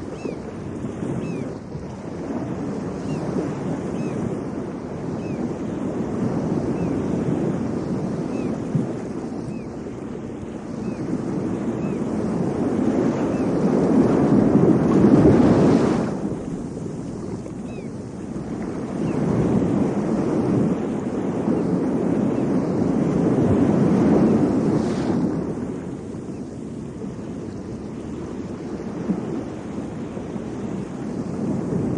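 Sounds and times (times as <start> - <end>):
waves rushing: 0.0 - 31.9
wind on microphone: 0.0 - 31.9.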